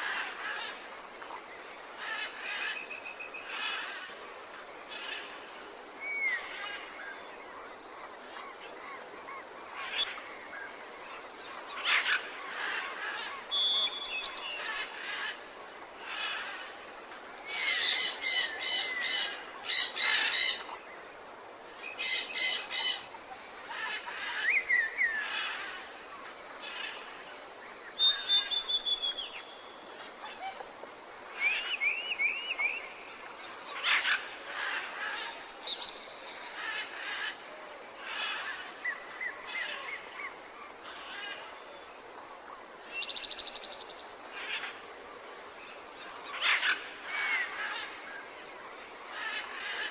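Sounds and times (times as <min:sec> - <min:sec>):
steady background hiss: 0:00.0 - 0:49.9
birds calling and trilling: 0:16.0 - 0:21.0, 0:21.8 - 0:30.6
rapid harsh bird calls: 0:17.5 - 0:20.8, 0:22.0 - 0:23.2.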